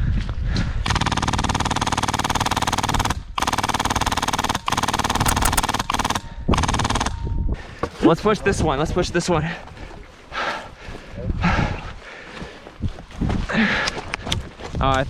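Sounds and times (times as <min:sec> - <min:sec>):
airsoft gun full-auto bursts: 0:05.0 - 0:05.8.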